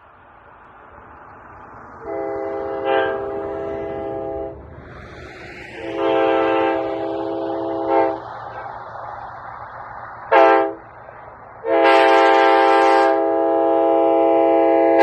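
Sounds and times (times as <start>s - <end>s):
train horn blasts: 2.0s - 4.6s, 5.8s - 8.7s, 10.3s - 10.9s, 11.6s - 15.0s.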